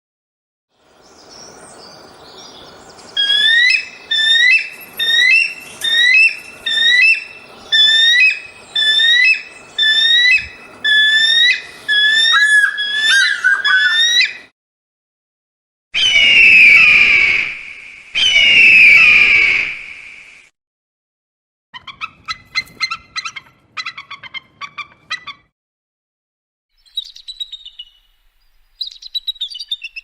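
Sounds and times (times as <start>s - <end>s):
eagle whistled cries: 2.4s - 14.5s, 16.0s - 20.0s.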